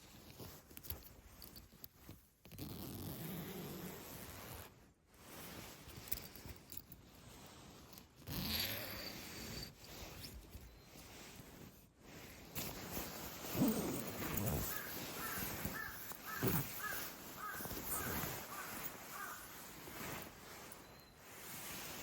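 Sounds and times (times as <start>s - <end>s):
crow cawing: 14.7s - 19.5s.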